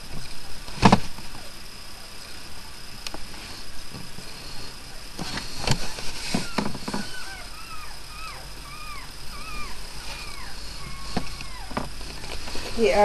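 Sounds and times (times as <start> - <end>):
handling knocks and rustles: 5.2 - 7.4
puppies squeaking: 5.4 - 13.0.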